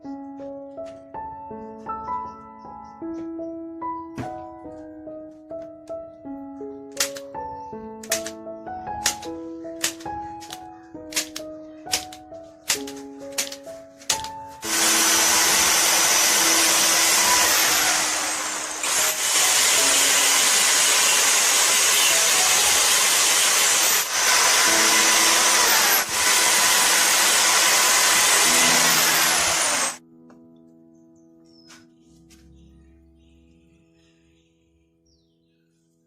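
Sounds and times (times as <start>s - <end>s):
soft background music: 0.0s - 18.1s, 28.3s - 36.0s
power tool running: 14.6s - 30.0s.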